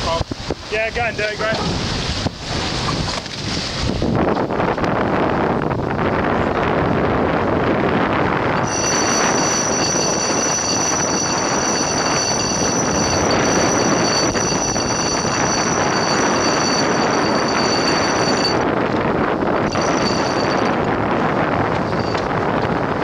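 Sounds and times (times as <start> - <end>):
wind and water rushing: 0.0 - 23.0
high whistling whine: 8.6 - 18.7, 19.6 - 20.9.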